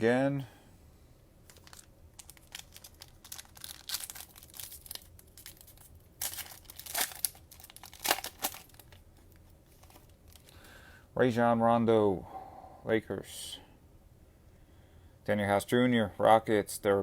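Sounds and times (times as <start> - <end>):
cellophane wrapper crinkling and tearing: 1.5 - 10.6.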